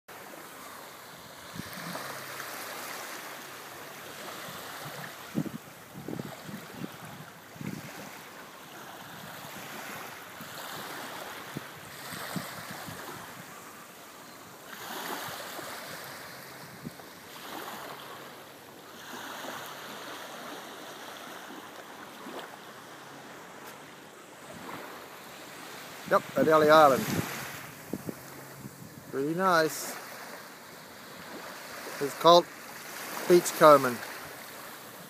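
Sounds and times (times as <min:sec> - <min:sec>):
small waves washing onto beach: 0:00.1 - 0:35.0.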